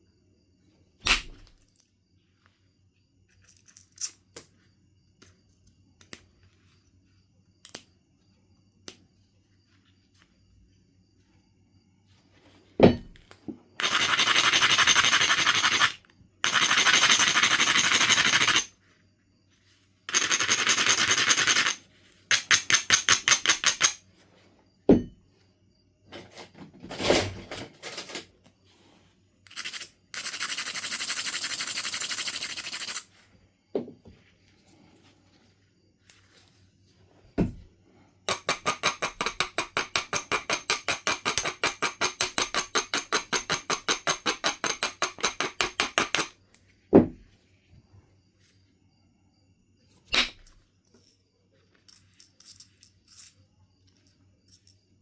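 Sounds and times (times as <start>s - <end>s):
stone grinding rubs: 13.8s - 18.7s, 29.5s - 33.1s, 38.3s - 46.3s.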